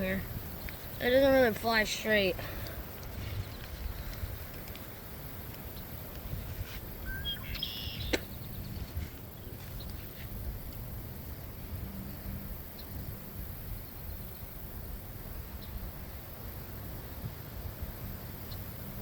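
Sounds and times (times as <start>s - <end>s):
wind buffeting microphone: 0.0s - 19.0s
bird chirping: 7.0s - 10.0s.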